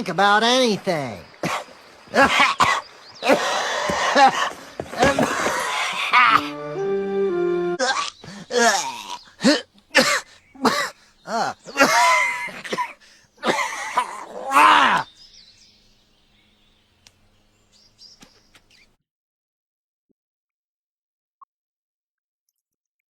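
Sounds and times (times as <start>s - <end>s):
man wheezing and gasping: 1.4s - 6.7s, 7.8s - 15.0s
faint clicks: 17.0s - 17.2s.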